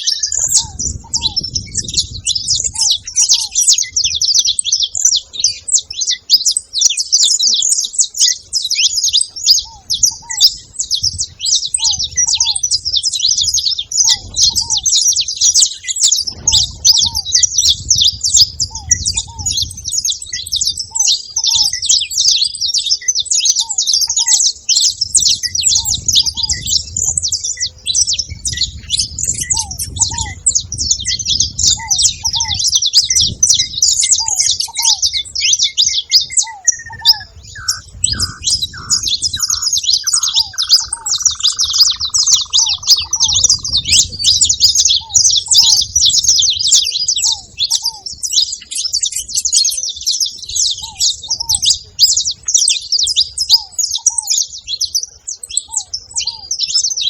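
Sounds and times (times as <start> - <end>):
finches chattering: 0.0 - 49.6
low short bird call: 36.4 - 44.0.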